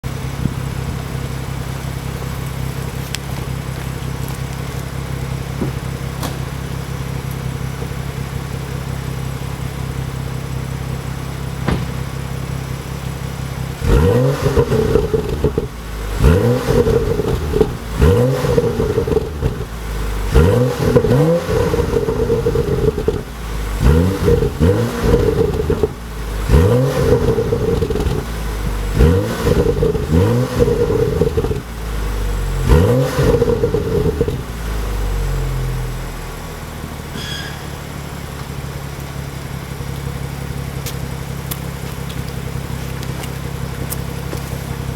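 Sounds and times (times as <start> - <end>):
car engine idling: 0.0 - 44.9
engine revving blips: 13.8 - 31.6, 32.2 - 34.4.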